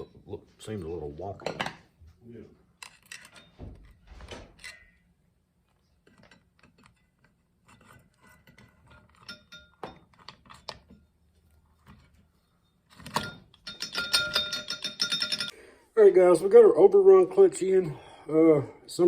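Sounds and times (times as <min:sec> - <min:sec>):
metal parts clinking: 0:02.8 - 0:05.1, 0:12.9 - 0:15.5
metallic ring: 0:07.7 - 0:10.3, 0:12.6 - 0:15.6.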